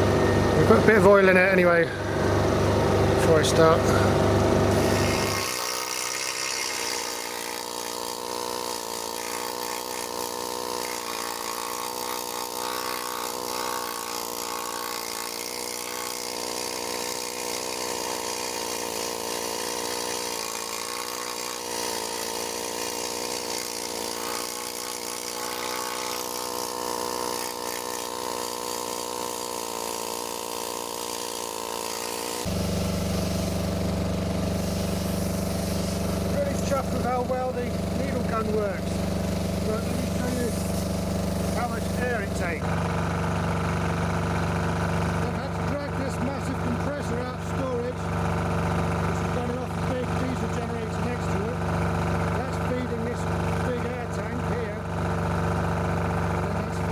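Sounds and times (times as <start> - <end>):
deep steady hum: 0.0 - 5.4
needle gun buzzing on steel: 0.0 - 56.9.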